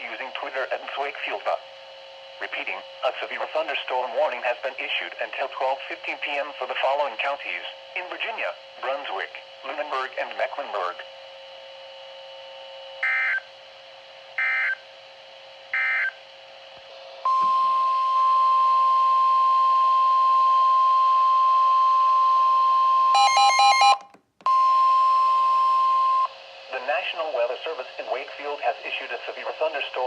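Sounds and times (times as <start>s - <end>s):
high warning alarm tone: 13.0s - 13.5s, 14.4s - 14.8s, 23.1s - 26.3s
warbling beeps: 23.2s - 24.1s.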